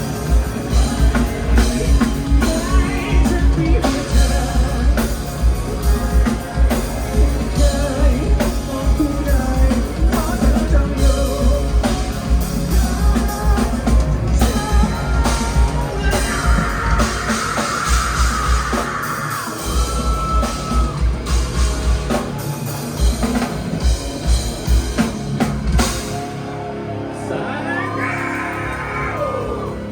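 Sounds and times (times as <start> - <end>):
rock band playing live: 0.0 - 29.9
person singing: 0.7 - 21.1.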